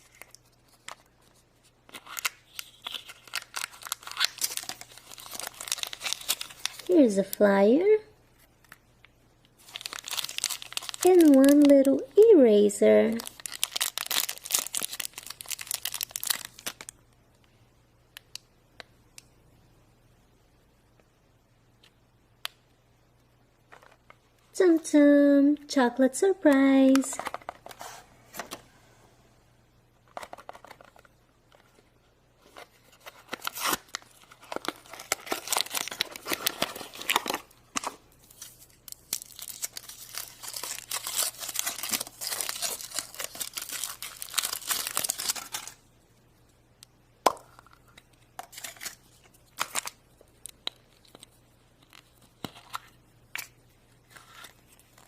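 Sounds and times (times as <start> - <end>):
foil wrapper tearing and crinkling: 1.9 - 6.9, 9.6 - 11.9, 13.1 - 17.0, 33.0 - 45.8, 48.4 - 51.3.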